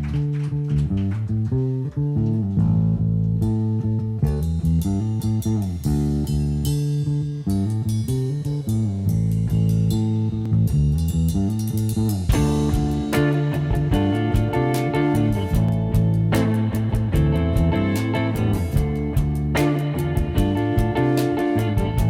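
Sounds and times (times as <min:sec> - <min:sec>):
bass and guitar riff: 0:00.0 - 0:22.0.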